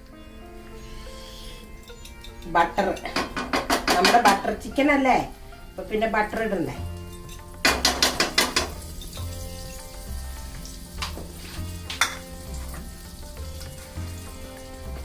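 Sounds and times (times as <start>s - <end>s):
butter sizzling in a pan: 6.8s - 15.0s.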